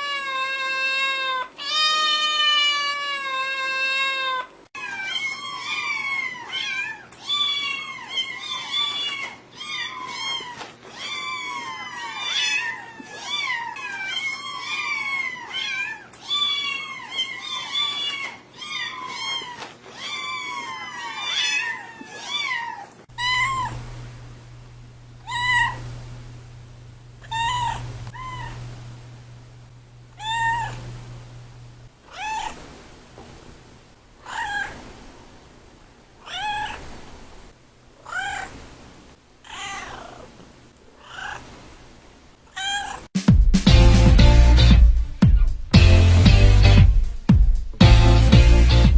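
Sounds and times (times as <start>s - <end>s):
cats meowing: 0.0s - 23.8s, 25.2s - 25.8s, 27.2s - 28.6s, 30.2s - 30.9s, 32.0s - 32.7s, 34.2s - 34.9s, 36.2s - 36.9s, 38.0s - 38.6s, 39.4s - 40.4s, 41.0s - 41.5s, 42.5s - 43.1s
low steady hum: 0.0s - 48.9s.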